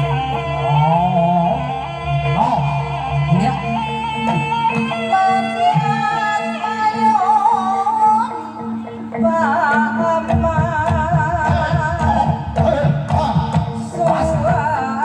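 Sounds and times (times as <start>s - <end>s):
wavering melody over held tones: 0.0s - 15.0s
low drumming: 10.3s - 14.8s.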